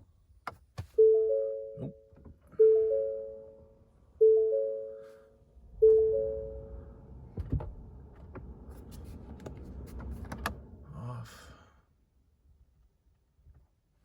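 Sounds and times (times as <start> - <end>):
three-note dashboard warning chime: 1.0 - 7.1
low rumble: 5.3 - 12.6
thump: 7.3 - 8.4.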